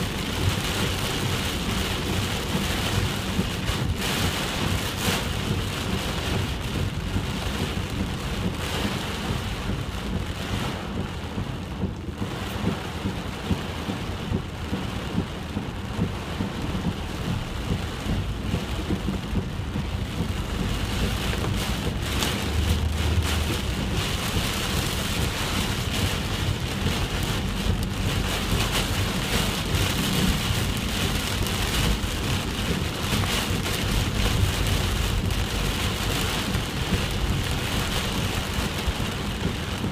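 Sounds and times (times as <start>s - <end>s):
heavy rain pouring: 0.0s - 39.9s
low rumble: 0.0s - 39.9s.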